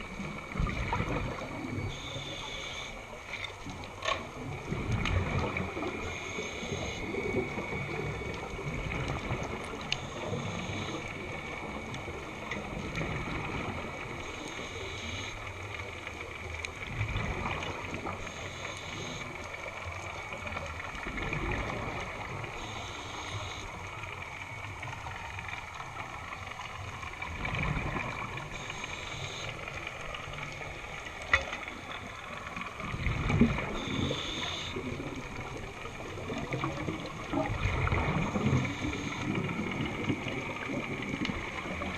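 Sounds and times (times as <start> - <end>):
exhaled bubbles gushing: 0.0 - 2.3, 3.2 - 14.5, 16.2 - 41.9
regulator inhalation hiss: 1.9 - 3.0, 6.0 - 7.2, 18.2 - 19.4, 22.5 - 23.8, 28.5 - 29.8, 33.8 - 34.9.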